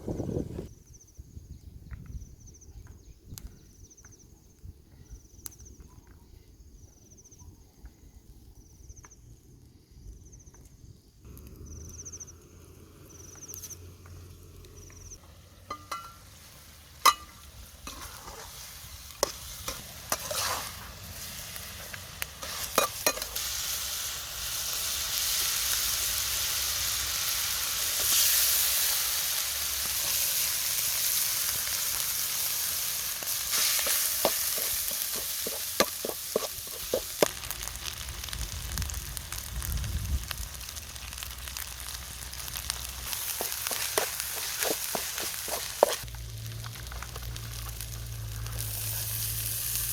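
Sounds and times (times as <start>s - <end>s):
food sizzling in hot oil: 11.3s - 49.9s
utensil scraping a pan: 17.9s - 20.9s, 33.5s - 37.3s, 43.1s - 46.0s.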